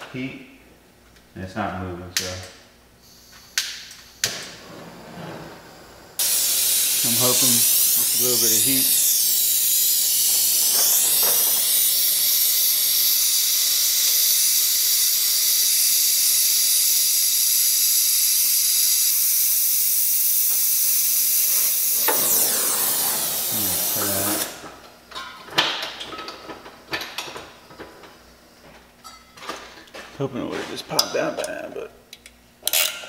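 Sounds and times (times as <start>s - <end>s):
gas torch flame hissing: 3.0s - 25.0s.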